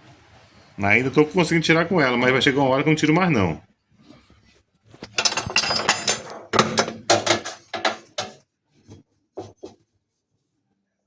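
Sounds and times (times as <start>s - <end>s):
metal clanks and knocks: 5.0s - 8.4s.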